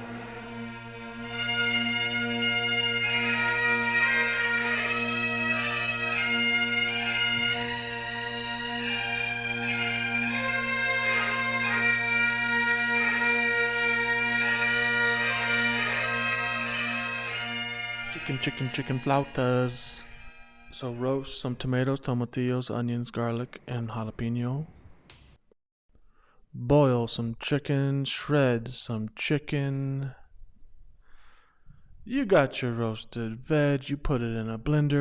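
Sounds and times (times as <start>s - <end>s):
bagpipe music: 0.0s - 21.7s.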